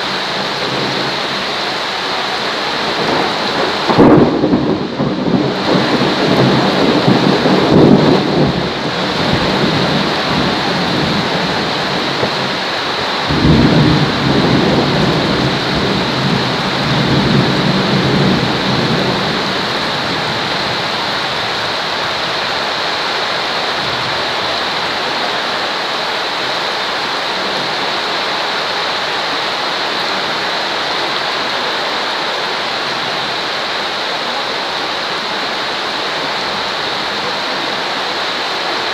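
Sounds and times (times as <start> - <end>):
heavy rain hissing: 0.0 - 38.9
low rolls of thunder: 2.6 - 21.8.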